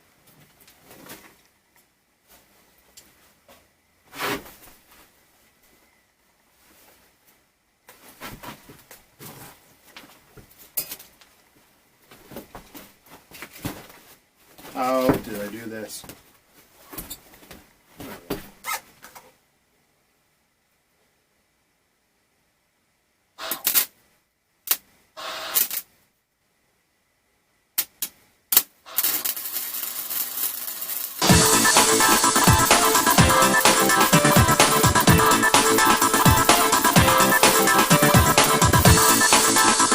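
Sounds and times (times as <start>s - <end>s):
arc welder crackling: 28.9s - 39.9s
background music: 31.2s - 39.9s.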